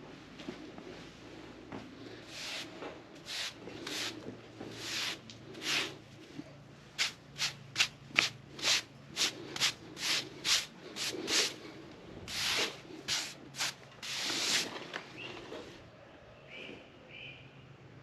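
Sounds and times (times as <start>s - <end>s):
brushing strokes on sawn wood: 2.2s - 6.0s, 7.0s - 11.7s, 12.3s - 14.7s.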